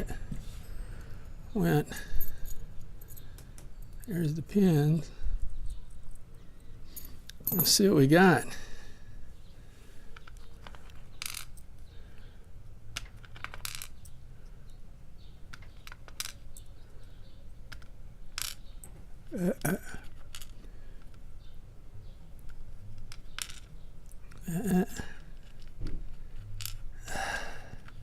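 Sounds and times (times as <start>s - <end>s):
metal pins clinking on hard surface: 6.9s - 8.0s, 11.1s - 11.7s, 13.0s - 14.2s, 23.0s - 25.7s
short vocal sound: 24.4s - 25.2s.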